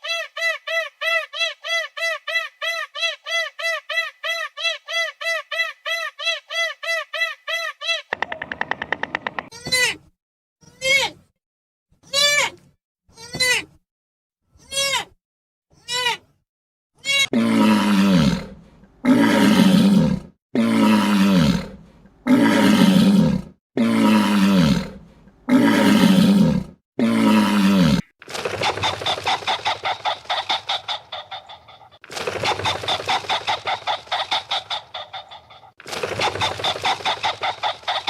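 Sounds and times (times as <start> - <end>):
fowl clucking or honking pulses: 28.5 - 38.0.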